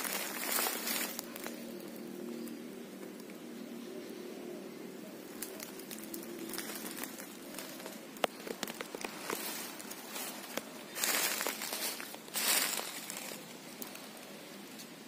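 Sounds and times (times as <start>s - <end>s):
dry leaves and twigs crackling: 0.0s - 4.2s, 4.9s - 15.0s.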